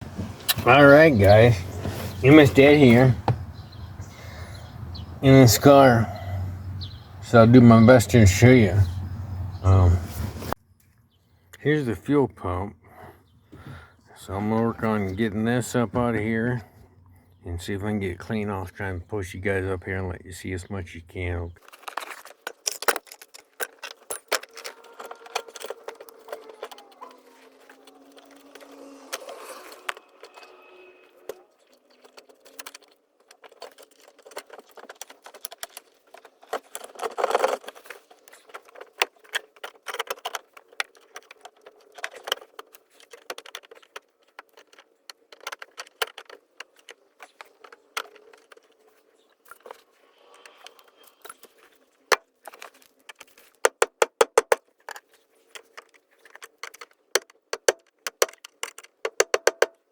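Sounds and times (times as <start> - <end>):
tools and metal parts clinking: 21.6 - 53.6.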